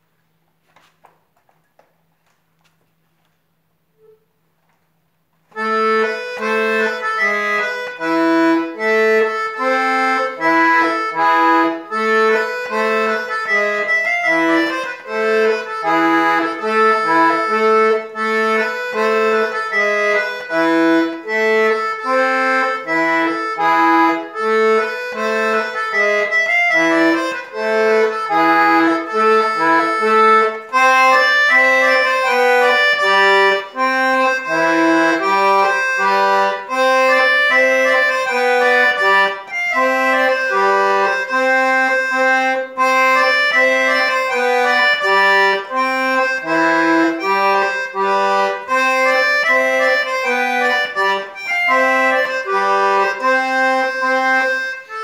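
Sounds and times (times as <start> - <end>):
accordion playing dance tune: 5.5 - 55.0.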